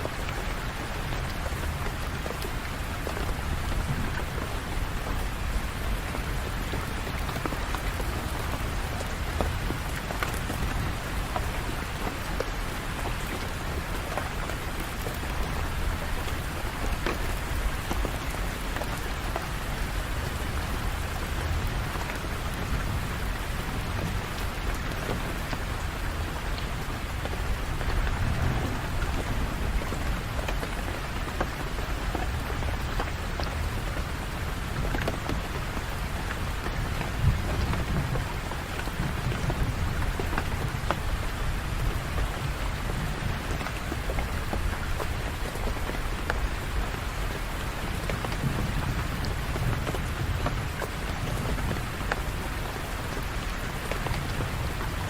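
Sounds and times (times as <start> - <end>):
steady rain falling: 0.0 - 55.0
thunder rumbling: 27.4 - 30.3.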